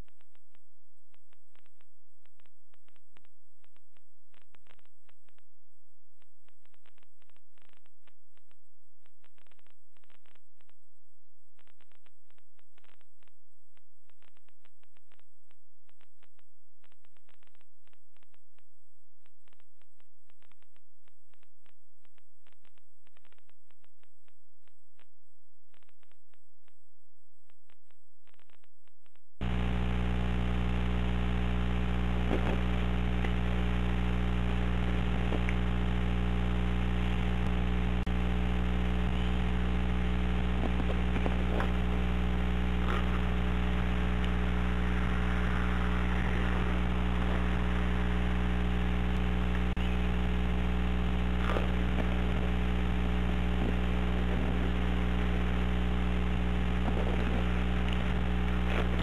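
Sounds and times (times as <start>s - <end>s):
electrical hum: 29.4s - 59.0s
faint clicks: 30.2s - 36.0s.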